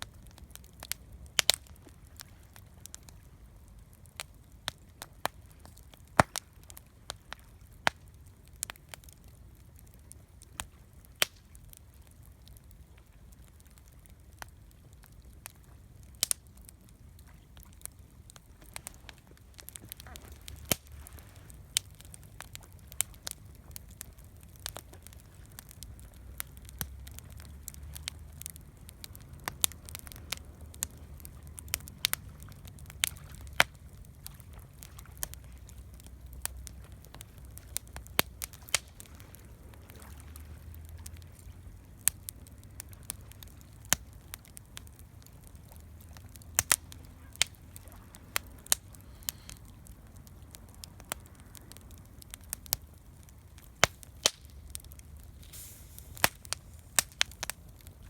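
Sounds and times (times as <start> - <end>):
campfire crackling and popping: 0.0 - 58.0
low steady rumble: 11.7 - 58.0.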